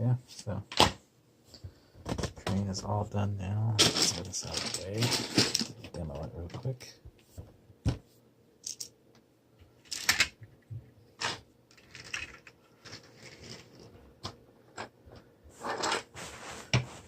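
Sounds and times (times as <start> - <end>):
plastic pieces clicking and rattling: 8.6 - 8.9, 9.8 - 10.4, 11.2 - 14.9.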